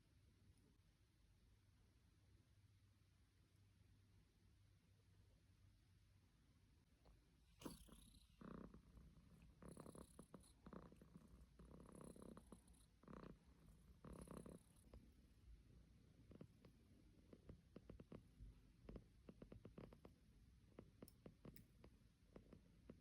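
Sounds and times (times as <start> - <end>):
cat purring softly: 7.1 - 23.0.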